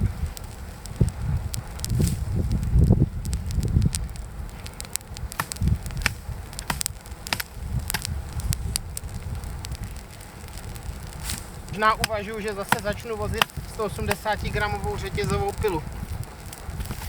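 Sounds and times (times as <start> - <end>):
campfire crackling and popping: 0.0 - 17.0
low fire rumble: 0.0 - 17.0.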